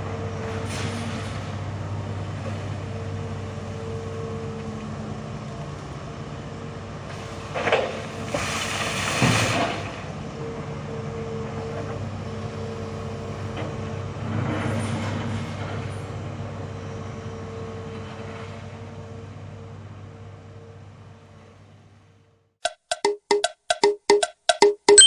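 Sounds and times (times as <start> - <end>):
heavy vehicle engine running: 0.0 - 9.1.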